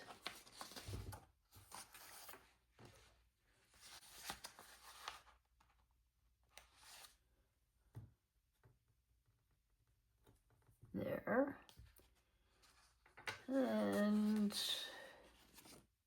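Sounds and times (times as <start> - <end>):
paper rustling: 0.0 - 3.1, 11.9 - 16.0.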